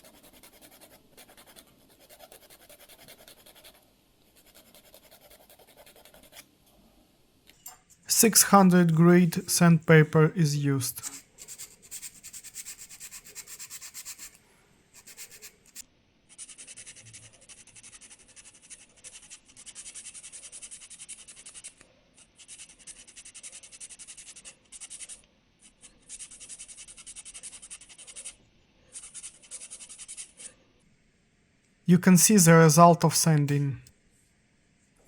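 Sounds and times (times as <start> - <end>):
sandpaper rubbing on plastic: 16.4 - 21.8, 26.1 - 28.3, 29.0 - 30.4.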